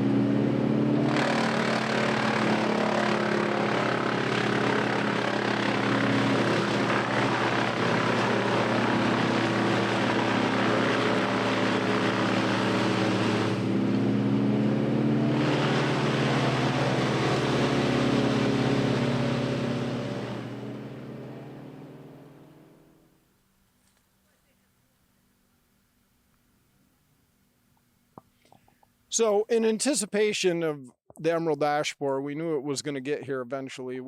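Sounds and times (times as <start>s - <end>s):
tree-removal machine engine running: 0.0s - 23.2s.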